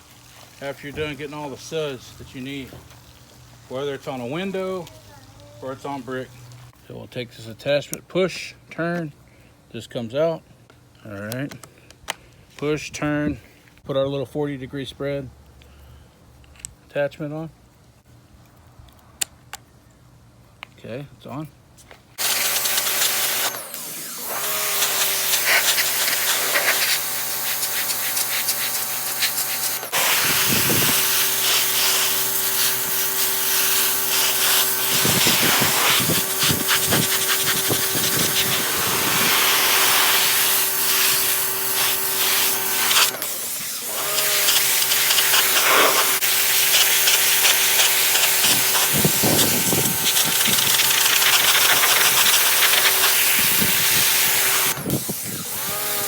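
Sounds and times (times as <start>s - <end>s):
pressure washer pump motor hum: 22.2s - 56.0s
hiss of water spray: 24.8s - 43.2s, 44.1s - 54.6s.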